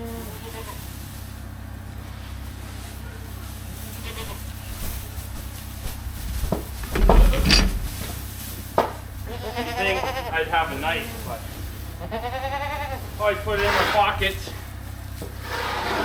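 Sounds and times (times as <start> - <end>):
goats bleating: 0.0 - 0.9, 3.8 - 4.7, 9.2 - 14.7
heavy thump: 6.2 - 8.2
loud knocks and clatter: 6.2 - 8.2.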